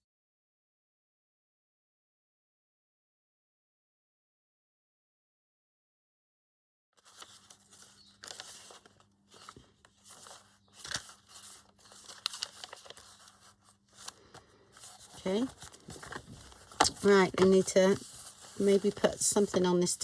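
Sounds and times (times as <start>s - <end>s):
paper rustling and crinkling: 7.0s - 20.0s.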